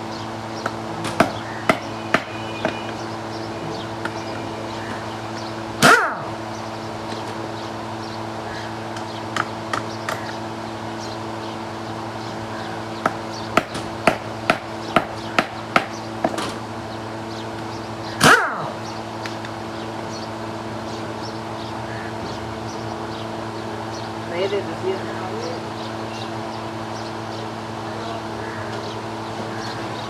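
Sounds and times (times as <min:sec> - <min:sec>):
steady mechanical hum: 0:00.0 - 0:30.0
sharp knocks: 0:00.6 - 0:03.1, 0:13.0 - 0:16.6.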